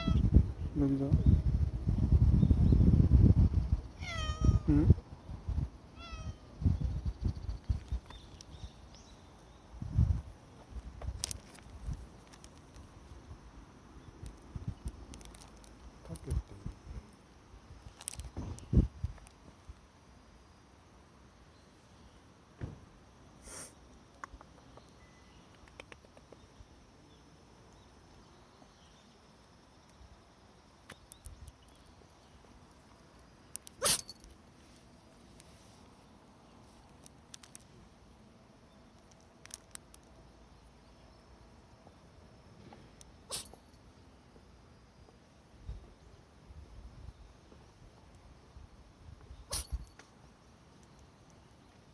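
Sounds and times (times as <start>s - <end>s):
faint clicks: 24.1s - 26.5s
cat sneezing: 33.8s - 34.1s, 43.3s - 43.6s, 49.5s - 49.8s.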